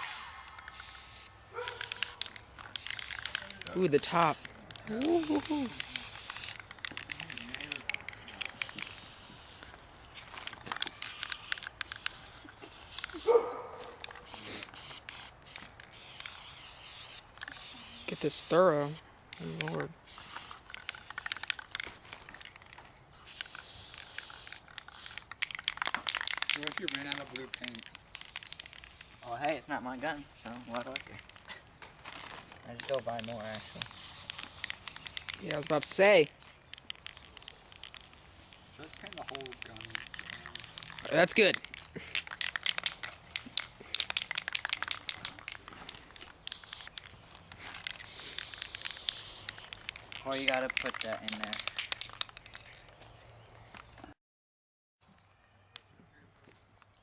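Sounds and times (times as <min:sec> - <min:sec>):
spray can hissing: 0:00.0 - 0:31.4, 0:32.4 - 0:36.3, 0:37.0 - 0:52.4
crinkling handling noise: 0:01.5 - 0:16.4, 0:18.9 - 0:54.2
light clicks and crackles: 0:33.8 - 0:38.2, 0:38.8 - 0:54.2.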